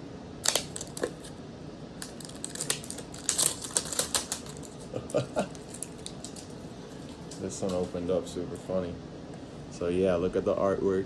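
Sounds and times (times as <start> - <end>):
plastic wrapping being ripped: 0.4 - 1.3, 2.0 - 6.5.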